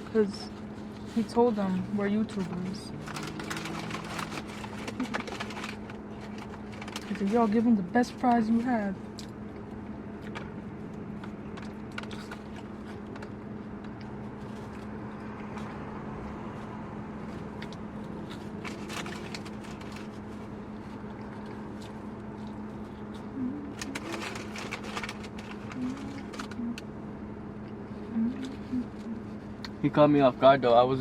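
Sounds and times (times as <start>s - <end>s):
car cabin hum: 0.0s - 31.0s
food wrappers crinkling: 2.3s - 8.2s, 11.2s - 15.7s, 17.3s - 26.7s.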